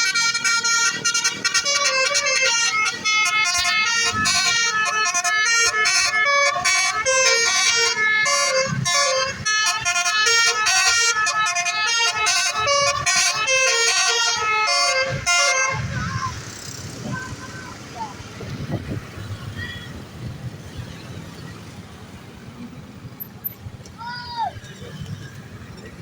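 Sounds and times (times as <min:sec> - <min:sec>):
multi-tone bus horn playing a tune: 0:00.0 - 0:16.4.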